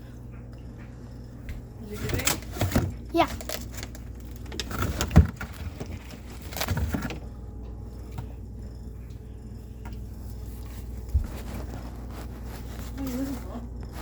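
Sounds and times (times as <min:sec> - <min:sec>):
steady low hum: 0:00.0 - 0:14.0
knocks and clatters of handling: 0:02.0 - 0:07.2.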